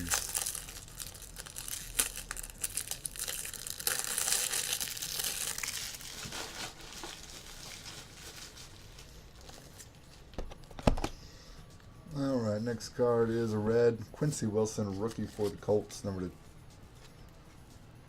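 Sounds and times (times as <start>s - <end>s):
packaging crinkling and tearing: 0.0s - 10.2s.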